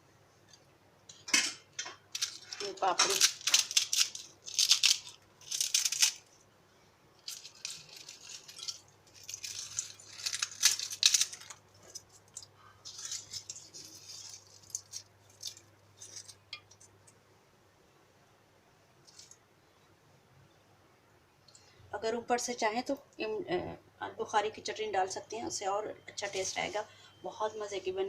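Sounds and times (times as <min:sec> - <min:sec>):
crackers clattering into a bowl: 0:01.1 - 0:06.3, 0:07.2 - 0:17.0.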